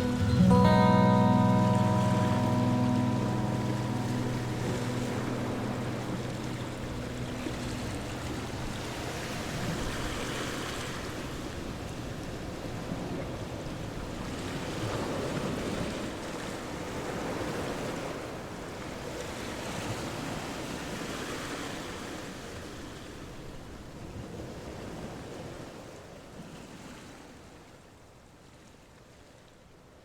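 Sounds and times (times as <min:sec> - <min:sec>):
lake water rushing: 0:00.0 - 0:18.4
wind: 0:00.0 - 0:30.0.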